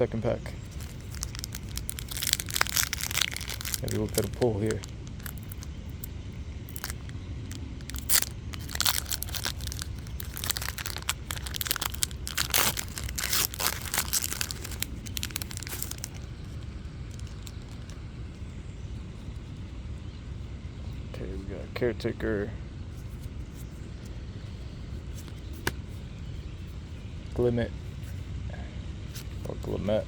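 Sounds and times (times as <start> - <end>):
foil wrapper tearing and crinkling: 0.6 - 6.0, 6.7 - 18.0.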